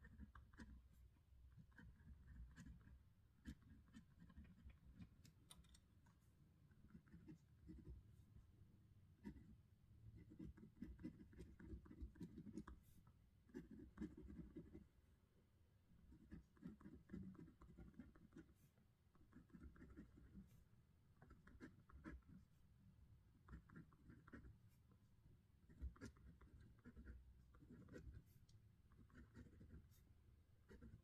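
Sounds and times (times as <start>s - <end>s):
pen scratching on paper: 0.0s - 0.8s, 1.5s - 5.2s, 6.8s - 8.1s, 9.2s - 9.6s, 10.2s - 12.8s, 13.5s - 14.9s, 16.0s - 20.6s, 21.2s - 22.5s, 23.4s - 24.8s, 25.6s - 31.0s.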